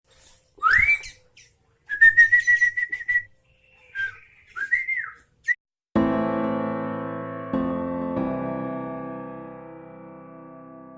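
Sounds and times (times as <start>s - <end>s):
bird whistling call: 0.6s - 5.6s
piano music: 6.0s - 10.9s.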